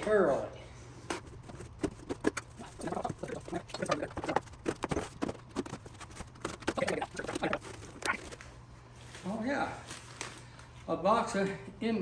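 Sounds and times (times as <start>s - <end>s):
cardboard rustling and crackling: 1.0s - 10.5s.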